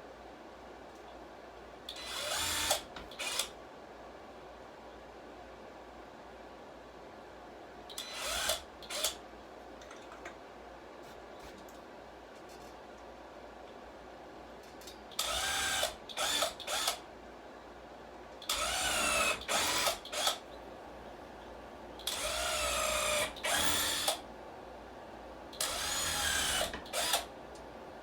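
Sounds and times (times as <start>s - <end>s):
power drill drilling into wood: 2.0s - 3.5s, 8.0s - 9.2s, 15.2s - 17.0s, 18.5s - 20.4s, 22.1s - 24.2s, 25.6s - 27.2s.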